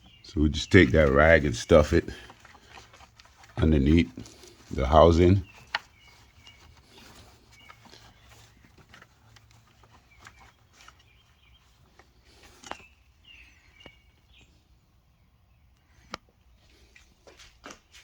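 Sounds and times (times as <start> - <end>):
faint bird chirps: 4.0 - 16.9
faint clicks and taps: 5.5 - 12.9.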